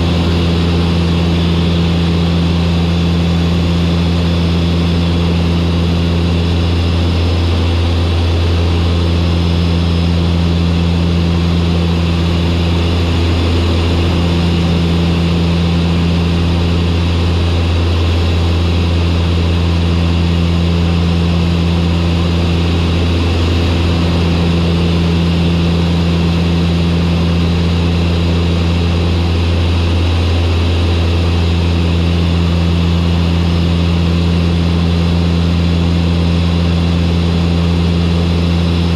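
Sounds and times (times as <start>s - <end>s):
turboprop engines droning: 0.0s - 38.9s.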